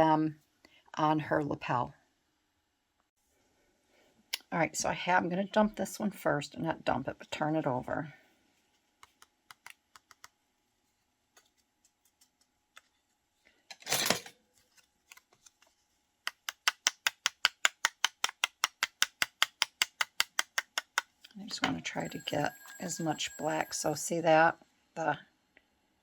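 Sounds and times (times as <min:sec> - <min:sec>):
fast sharp taps on paper: 0:16.3 - 0:21.2.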